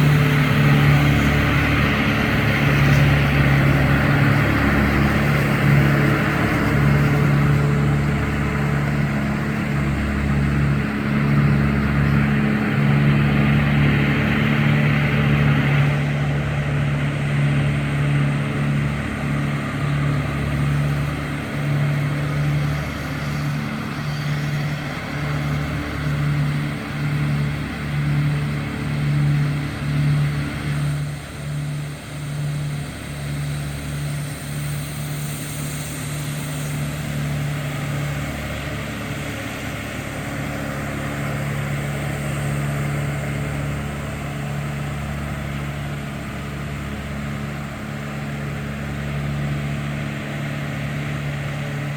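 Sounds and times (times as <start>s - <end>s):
heavy vehicle engine droning: 0.0s - 51.9s
rushing hiss: 30.2s - 46.8s.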